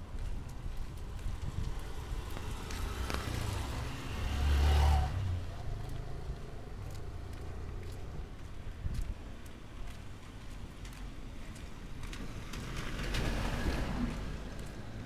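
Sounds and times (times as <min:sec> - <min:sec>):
vehicle engine passing by: 0:00.8 - 0:08.5, 0:12.0 - 0:15.0.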